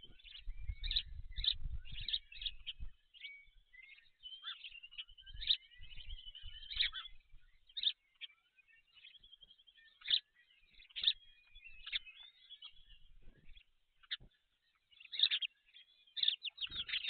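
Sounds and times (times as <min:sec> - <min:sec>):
songbirds chirping and trilling: 0:00.0 - 0:17.0.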